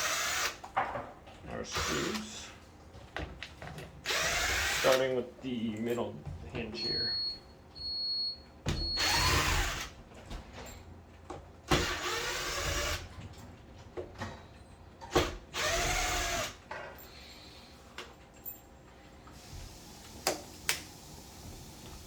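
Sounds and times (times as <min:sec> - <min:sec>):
power drill motor whine: 0:00.0 - 0:00.6, 0:04.1 - 0:04.9, 0:08.8 - 0:09.9, 0:11.7 - 0:13.1, 0:15.5 - 0:16.6.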